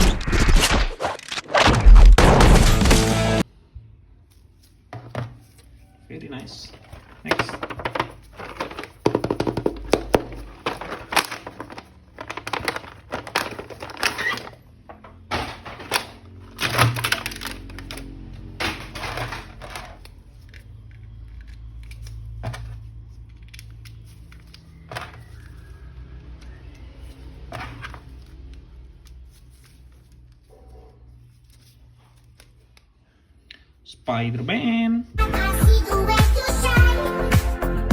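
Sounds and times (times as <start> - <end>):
plastic toy packaging clatter: 6.4 - 25.7.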